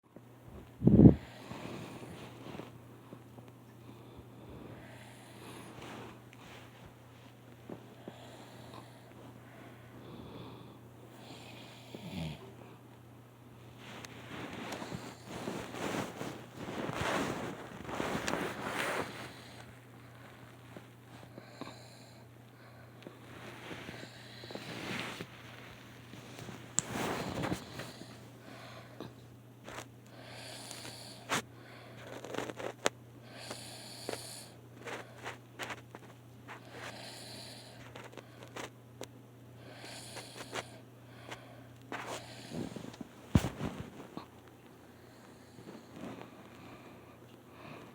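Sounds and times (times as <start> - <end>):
faint hum: 0.1 - 47.9
man snoring: 10.1 - 12.5, 33.3 - 34.6, 36.9 - 37.8, 39.6 - 40.8.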